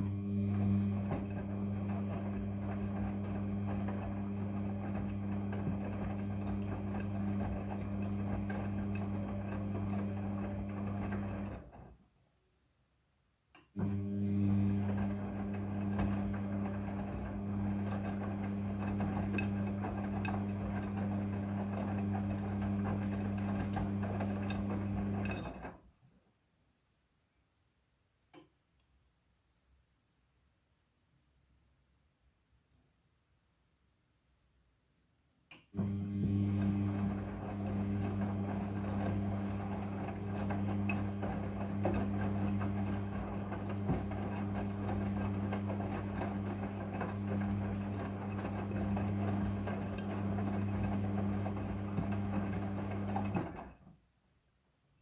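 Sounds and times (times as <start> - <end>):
washing machine motor humming: 0.0 - 11.9, 13.8 - 25.8, 35.8 - 53.9.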